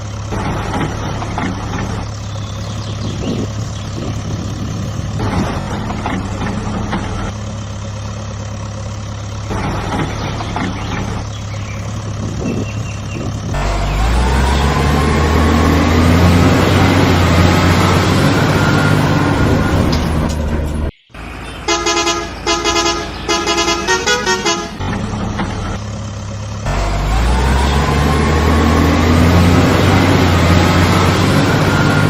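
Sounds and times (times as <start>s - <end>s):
heavy truck engine running: 0.0s - 32.0s
truck horn honking: 21.5s - 25.4s.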